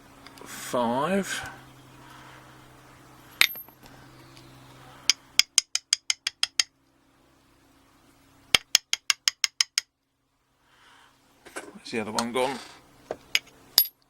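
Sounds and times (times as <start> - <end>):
small metallic ticks: 5.1 - 7.0.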